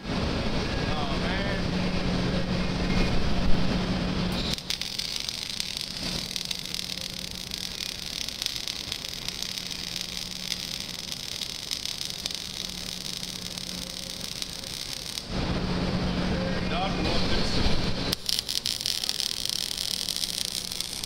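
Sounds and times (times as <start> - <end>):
low hum: 0.0 - 21.0
welding arc crackling hiss: 4.3 - 15.5, 17.6 - 21.0.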